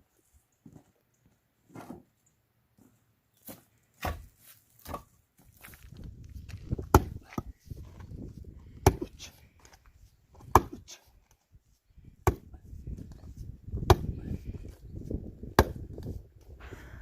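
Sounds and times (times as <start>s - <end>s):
axe chopping firewood: 4.0s - 5.1s, 6.7s - 9.7s, 10.3s - 11.0s, 12.2s - 16.2s.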